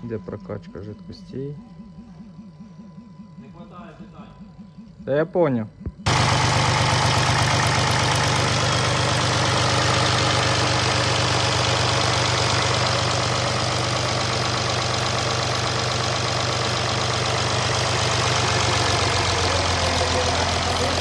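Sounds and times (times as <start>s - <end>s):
diesel engine idling: 6.1s - 21.0s.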